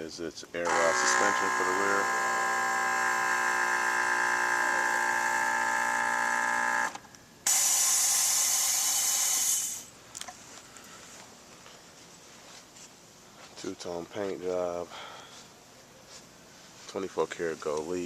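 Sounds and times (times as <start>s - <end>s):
air compressor buzzing whine: 0.6s - 9.9s
air release hiss: 7.5s - 9.9s.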